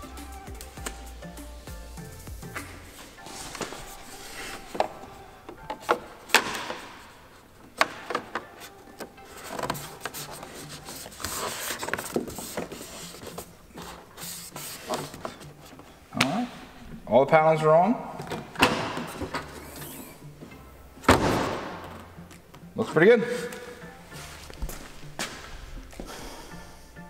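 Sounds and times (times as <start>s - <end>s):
plastic trim rubbing and scraping: 3.5s - 15.8s.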